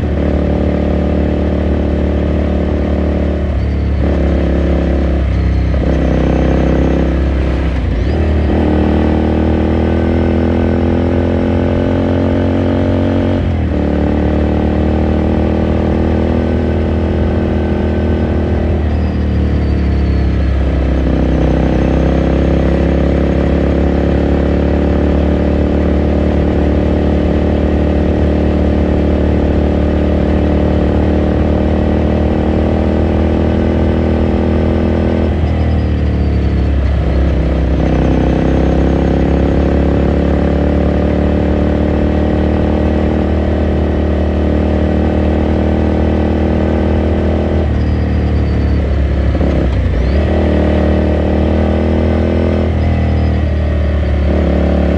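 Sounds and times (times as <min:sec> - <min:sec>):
motorcycle engine pulling under load: 0:03.6 - 0:13.2.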